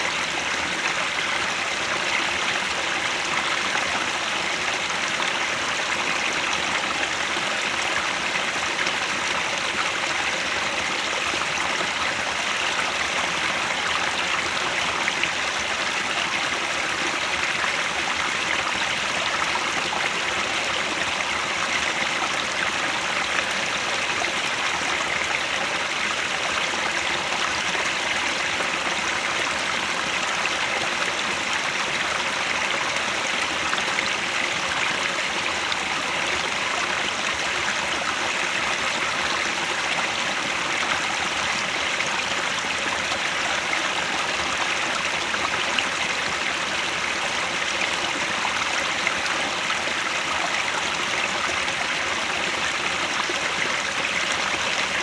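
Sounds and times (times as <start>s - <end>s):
stream rushing over rocks: 0.0s - 55.0s.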